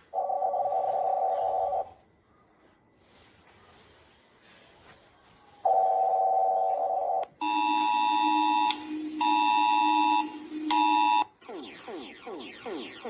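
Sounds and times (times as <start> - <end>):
two-tone electronic alarm: 0.0 - 2.0, 5.7 - 13.0
falling electronic sweeps: 6.1 - 13.0
steady electronic tone: 6.7 - 13.0.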